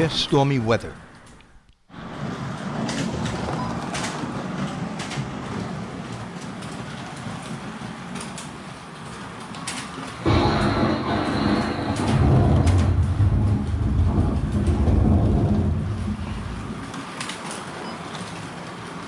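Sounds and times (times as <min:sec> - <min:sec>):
loud rumble: 0:10.2 - 0:17.0.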